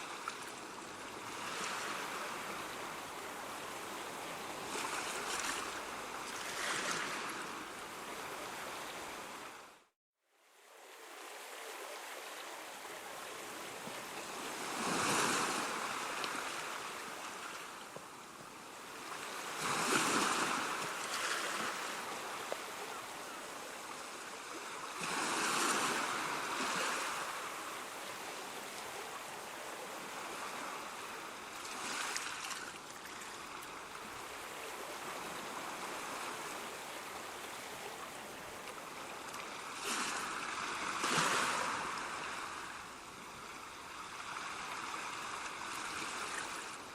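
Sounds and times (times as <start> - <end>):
ocean waves breaking: 0.0 - 9.6, 11.1 - 17.8, 18.8 - 46.9.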